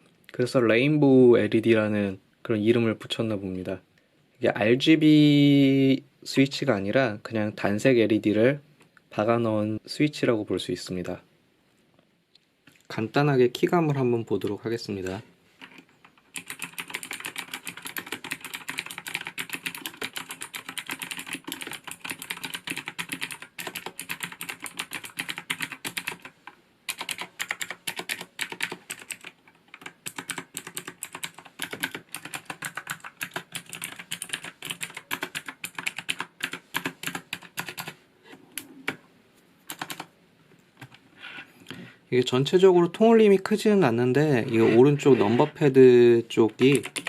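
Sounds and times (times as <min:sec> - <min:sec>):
fast typing on mechanical keyboard: 0:15.6 - 0:38.0, 0:39.7 - 0:40.1, 0:46.5 - 0:47.0.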